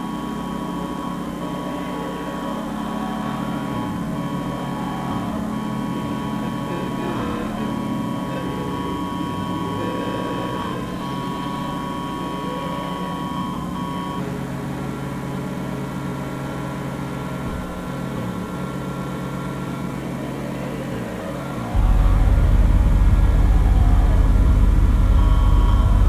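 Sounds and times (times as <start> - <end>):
loud deep rumble: 21.7 - 26.0
low droning rumble: 21.7 - 26.0.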